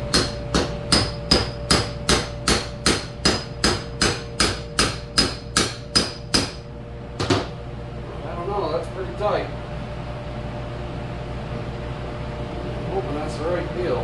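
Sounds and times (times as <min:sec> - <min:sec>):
hammer tapping on metal: 0:00.1 - 0:06.6.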